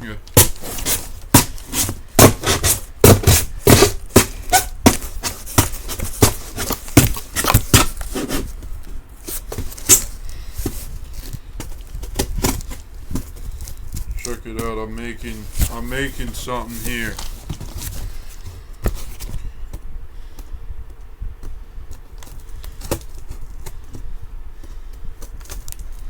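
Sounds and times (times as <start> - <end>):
knife chopping on surface: 0.4 - 8.3.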